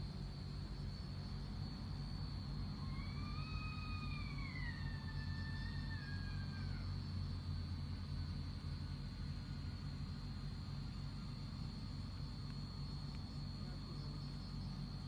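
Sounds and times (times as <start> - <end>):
long wailing cry: 2.9 - 6.9
steady low rumble: 6.0 - 15.0.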